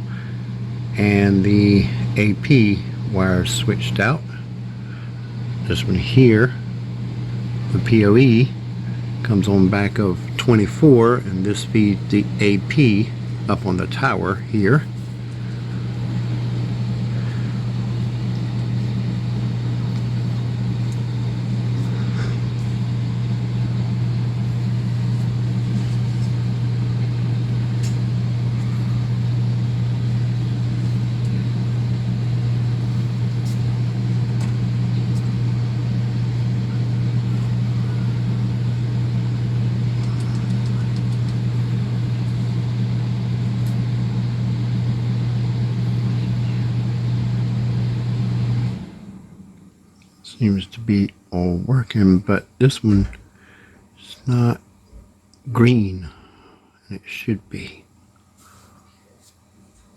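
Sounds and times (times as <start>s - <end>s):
network equipment humming: 0.0s - 59.9s
cables ticking: 6.9s - 45.3s.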